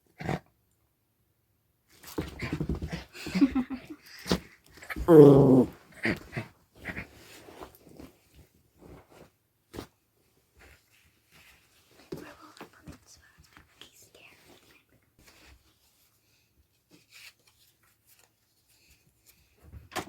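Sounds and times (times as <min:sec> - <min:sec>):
dog growling: 0:04.9 - 0:07.1.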